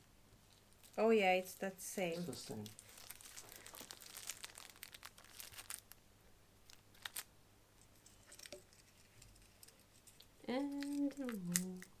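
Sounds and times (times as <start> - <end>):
packaging crinkling: 0.7 - 6.0, 6.6 - 7.3, 9.3 - 11.9.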